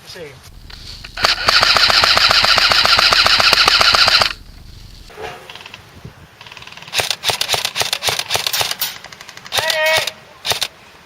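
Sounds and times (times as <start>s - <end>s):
airsoft gun firing full auto: 0.5s - 5.8s.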